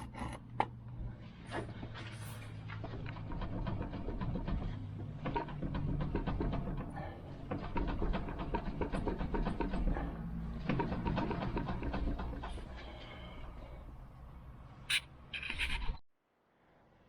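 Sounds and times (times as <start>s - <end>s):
diesel engine clattering: 1.6s - 13.9s.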